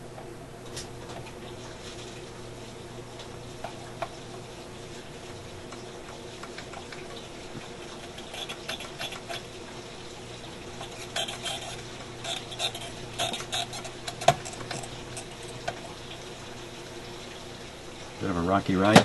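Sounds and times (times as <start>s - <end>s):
hand tools clicking and scraping: 8.1s - 9.5s, 10.8s - 15.3s.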